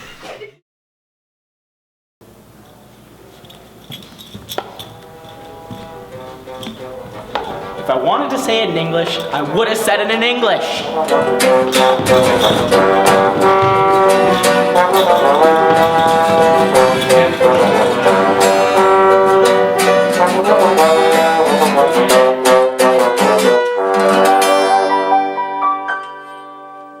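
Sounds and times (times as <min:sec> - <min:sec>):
upbeat music with strings and brass: 0:05.1 - 0:25.5.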